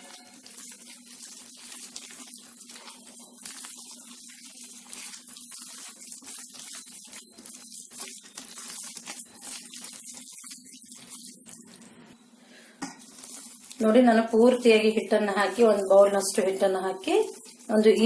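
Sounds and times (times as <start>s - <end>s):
hands squishing sticky dough: 0.0s - 11.8s, 13.0s - 18.0s.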